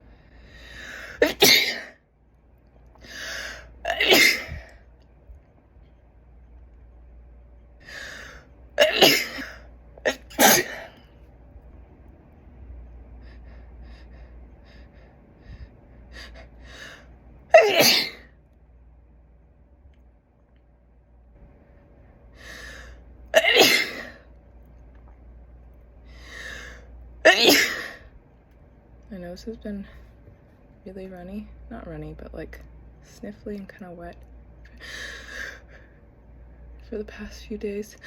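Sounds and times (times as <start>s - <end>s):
woman sneezing: 1.2s - 1.9s, 17.6s - 18.2s.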